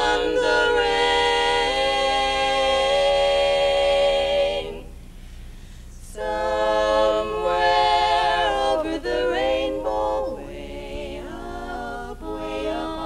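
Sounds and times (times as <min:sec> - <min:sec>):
a cappella group singing in harmony: 0:00.0 - 0:05.2, 0:05.9 - 0:13.0
singers breathing: 0:05.0 - 0:06.1.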